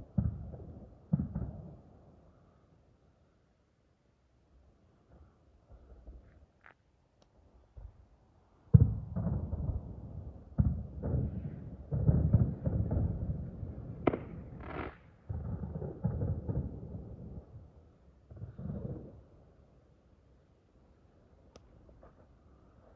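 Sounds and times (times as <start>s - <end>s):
fireworks booming with rumble: 0.1s - 1.8s, 8.7s - 17.7s, 18.3s - 19.3s
sharp firework crack: 14.0s - 16.5s.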